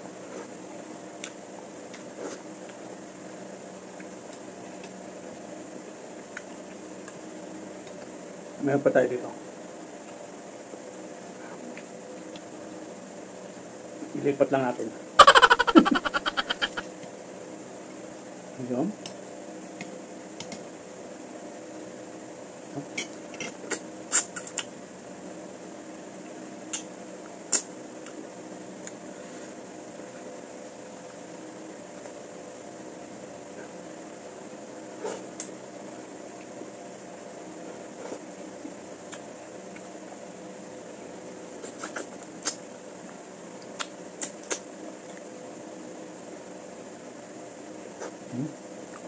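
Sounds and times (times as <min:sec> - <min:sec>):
steady low hum: 0:00.0 - 0:49.0
sharp eating clicks: 0:23.0 - 0:24.7, 0:27.5 - 0:28.2, 0:43.6 - 0:45.2.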